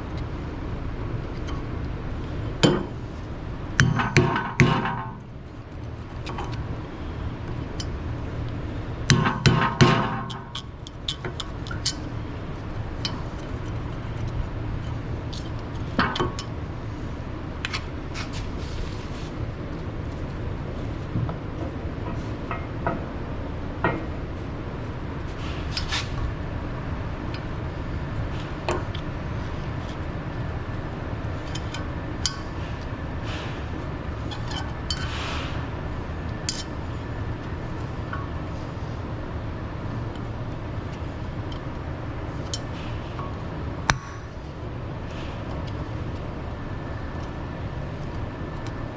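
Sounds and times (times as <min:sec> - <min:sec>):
steady low hum: 0:00.0 - 0:48.9.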